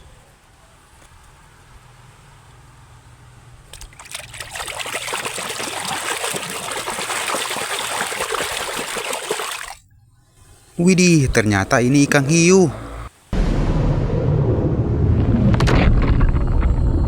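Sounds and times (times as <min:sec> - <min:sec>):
water splashing and trickling: 0:03.7 - 0:09.8.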